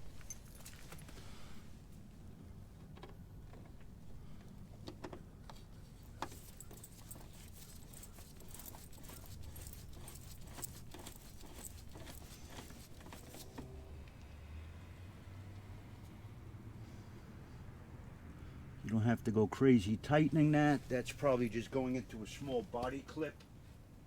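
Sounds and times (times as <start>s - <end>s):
clicks and rattles of parts handled: 2.8s - 13.7s.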